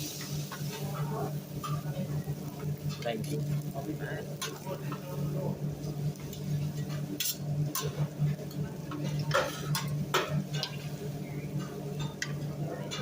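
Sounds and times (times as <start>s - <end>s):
metal spatulas clinking on griddle: 7.2s - 8.0s, 11.6s - 13.0s.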